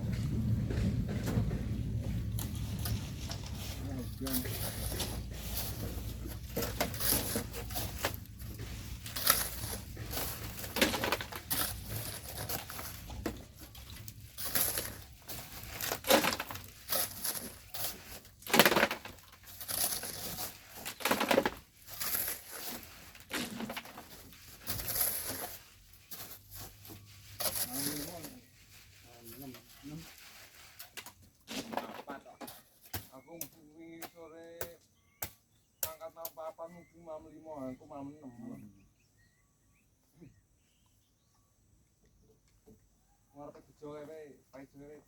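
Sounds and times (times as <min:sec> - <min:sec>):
hand tools scraping gravel: 0:00.0 - 0:34.8.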